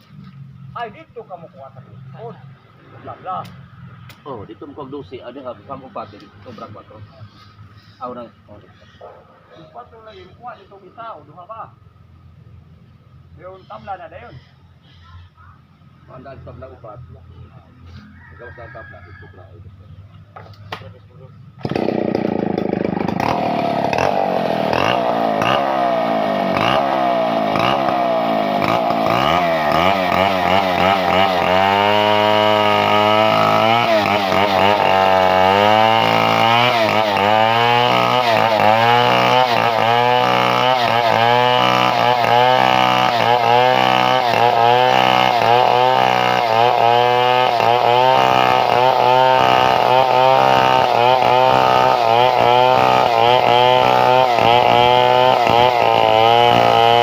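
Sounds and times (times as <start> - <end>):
chainsaw sawing timber: 5.9 - 8.3, 21.6 - 57.0.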